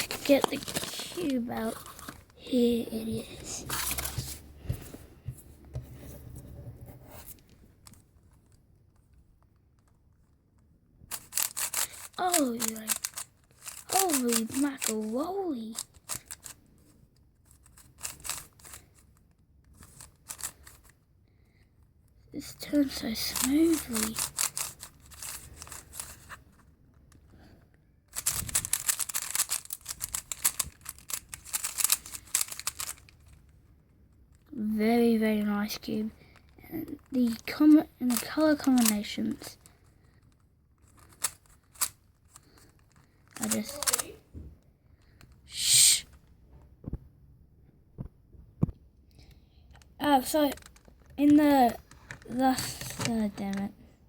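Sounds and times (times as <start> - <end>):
packaging rustling: 0.0 - 2.4, 3.5 - 4.4
puzzle cube plastic clicks: 0.0 - 4.2, 7.4 - 21.0, 22.5 - 33.6, 35.6 - 44.2, 44.9 - 46.3, 49.1 - 53.8.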